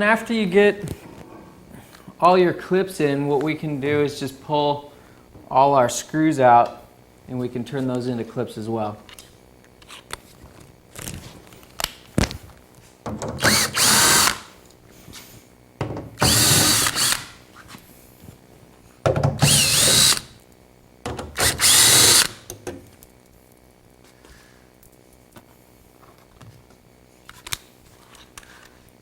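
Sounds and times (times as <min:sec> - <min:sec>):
power drill motor whine: 0:13.4 - 0:14.5, 0:16.2 - 0:17.4, 0:19.4 - 0:20.4, 0:21.4 - 0:22.4.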